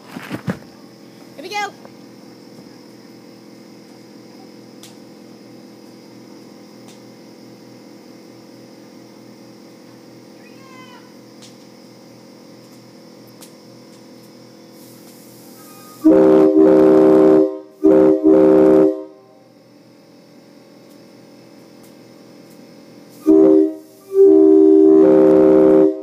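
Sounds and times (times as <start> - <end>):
train air horn chord: 15.6 - 19.4, 23.2 - 26.0.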